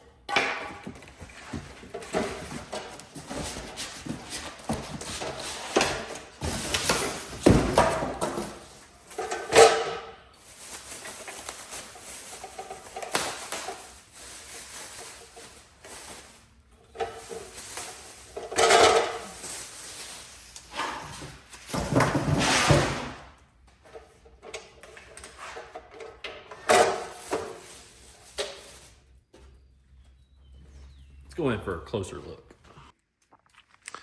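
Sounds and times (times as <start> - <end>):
cardboard and styrofoam rustling: 0.5 - 23.3, 25.0 - 29.3.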